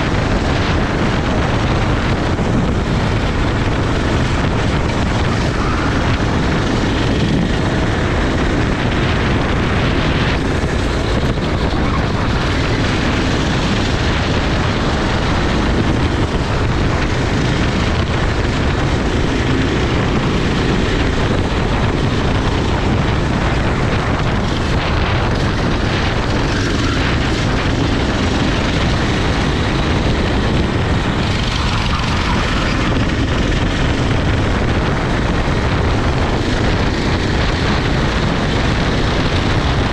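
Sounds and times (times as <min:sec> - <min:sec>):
go-kart engine running hard: 0:00.0 - 0:39.9
wind noise: 0:00.0 - 0:39.9.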